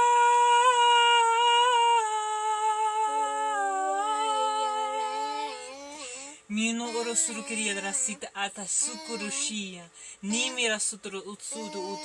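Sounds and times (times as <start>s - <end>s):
woman singing a long note: 0.0s - 5.9s.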